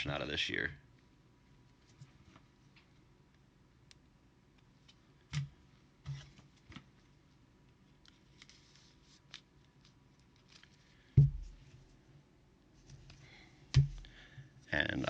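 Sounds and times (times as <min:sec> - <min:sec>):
sharp thump: 0:11.2 - 0:11.6.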